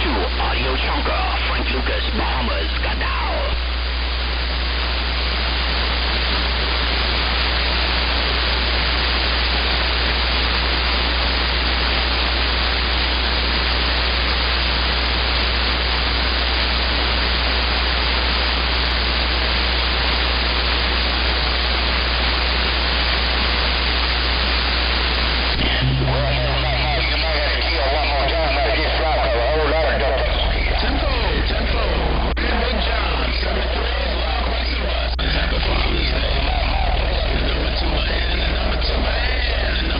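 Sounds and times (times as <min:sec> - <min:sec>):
radio static hiss: 0:00.0 - 0:39.9
low hum: 0:25.6 - 0:39.9.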